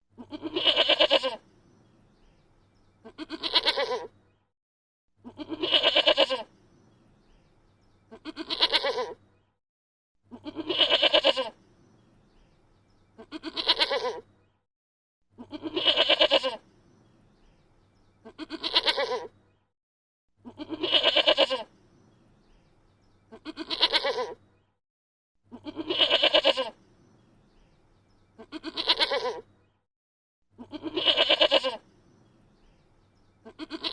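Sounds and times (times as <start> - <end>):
goat bleating: 0.2 - 1.4, 3.0 - 4.1, 5.2 - 6.5, 8.1 - 9.2, 10.3 - 11.6, 13.2 - 14.2, 15.4 - 16.6, 18.2 - 19.3, 20.4 - 21.7, 23.3 - 24.4, 25.5 - 26.8, 28.4 - 29.4, 30.6 - 31.8, 33.4 - 33.9.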